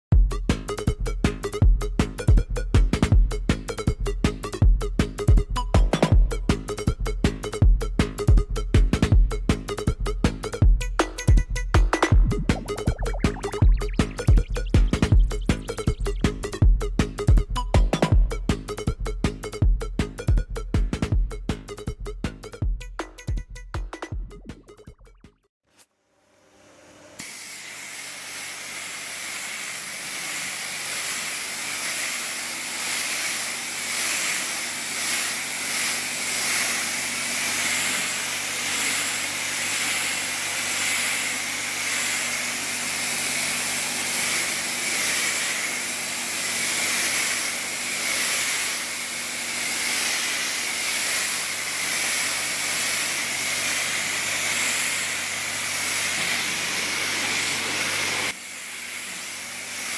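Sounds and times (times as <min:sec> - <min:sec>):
thin steady tone: 0:12.2 - 0:16.5
high-pressure water spray hiss: 0:27.2 - 0:59.9.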